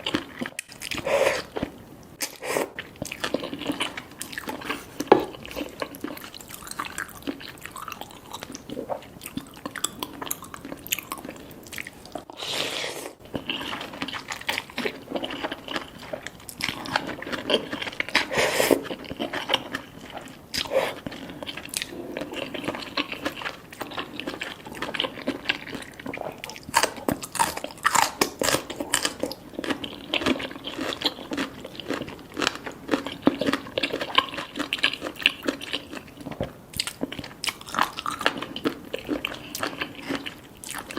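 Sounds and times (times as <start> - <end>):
chewing and mouth smacks: 13.2 - 40.9.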